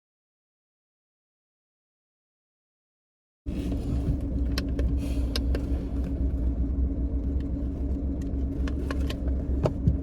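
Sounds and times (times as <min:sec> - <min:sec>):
low rumble: 0:03.5 - 0:10.0.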